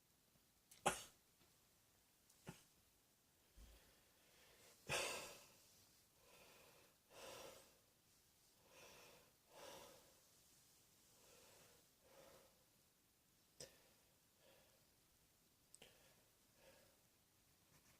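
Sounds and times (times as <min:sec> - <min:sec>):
person breathing: 0:03.5 - 0:07.9, 0:08.6 - 0:12.7, 0:13.6 - 0:14.9, 0:15.8 - 0:17.1.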